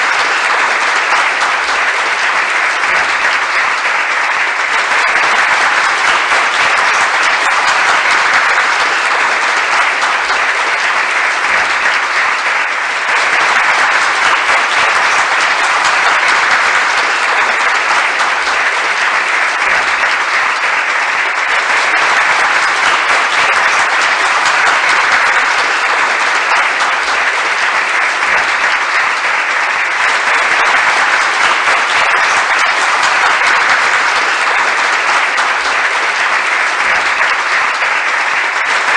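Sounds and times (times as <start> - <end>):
crowd applauding: 0.0 - 38.9.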